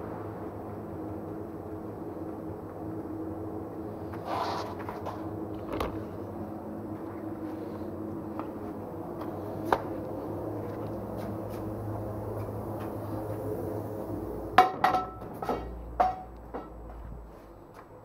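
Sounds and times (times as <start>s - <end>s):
machine hum: 0.0s - 18.0s.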